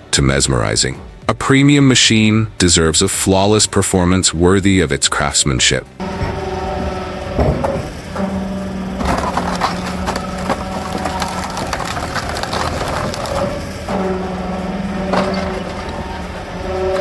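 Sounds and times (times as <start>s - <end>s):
wood splitter engine humming: 0.0s - 17.0s
wood cracking and splintering: 6.0s - 17.0s.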